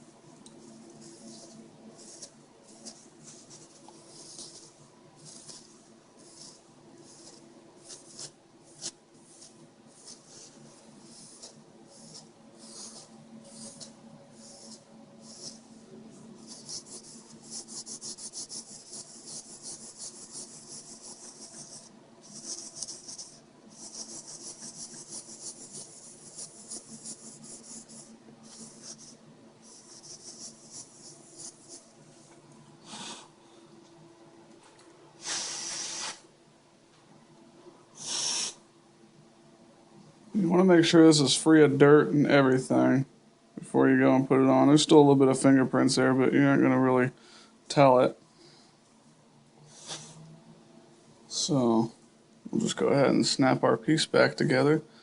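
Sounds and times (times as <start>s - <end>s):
faint steady hum: 0.0s - 55.0s
tissue rubbing on screen: 0.6s - 33.2s, 35.2s - 36.3s.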